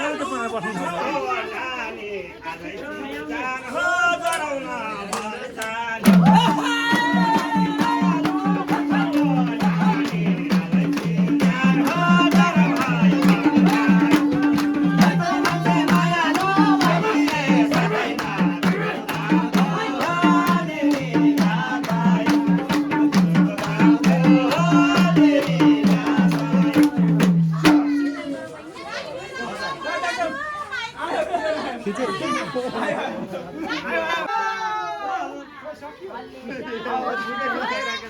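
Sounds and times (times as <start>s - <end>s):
song with singing: 0.0s - 28.4s
percussion beat: 6.0s - 28.5s.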